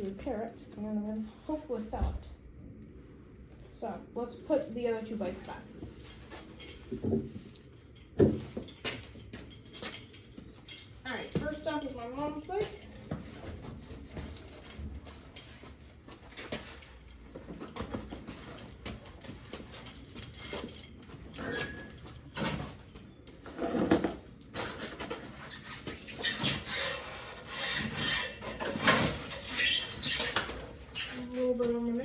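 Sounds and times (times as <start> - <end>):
bicycles rubbing and rattling: 5.4 - 31.3.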